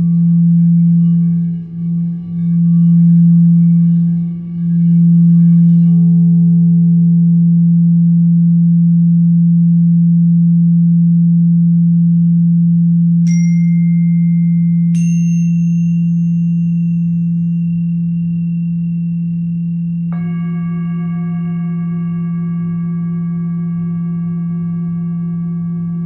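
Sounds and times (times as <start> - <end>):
low humming tone: 0.0 - 26.0
struck bell tones: 13.3 - 26.0.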